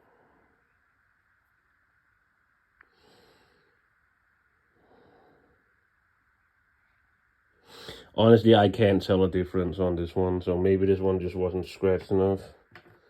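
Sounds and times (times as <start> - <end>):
faint tick: 2.8 - 3.0
faint nasal exhalations: 7.6 - 8.2.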